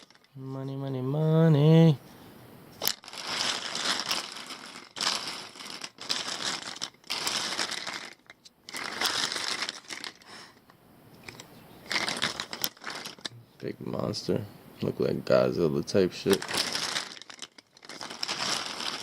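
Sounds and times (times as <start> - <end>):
plastic lighters rustling: 0.0 - 0.4, 2.7 - 13.4, 16.1 - 19.0.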